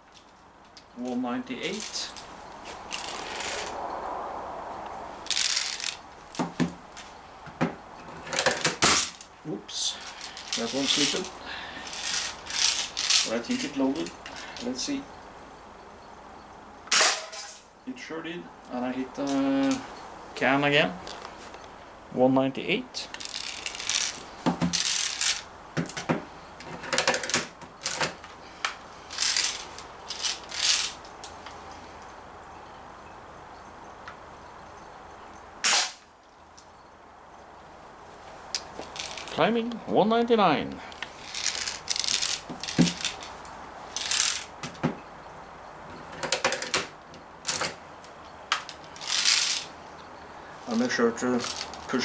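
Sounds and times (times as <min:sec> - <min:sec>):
rustle of handling: 0:00.0 - 0:16.1, 0:16.9 - 0:22.0, 0:23.0 - 0:32.6, 0:35.7 - 0:52.0.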